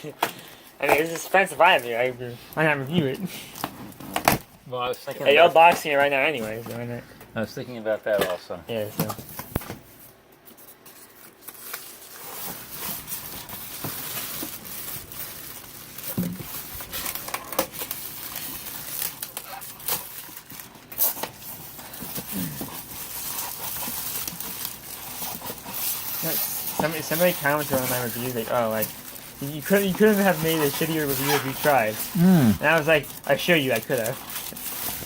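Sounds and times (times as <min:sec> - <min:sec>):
packaging crinkling and tearing: 0:10.8 - 0:35.0.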